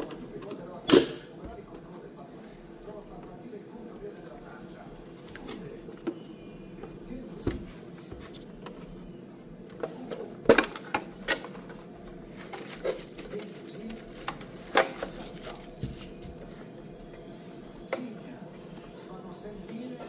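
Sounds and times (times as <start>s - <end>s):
low background noise: 0.0s - 20.0s.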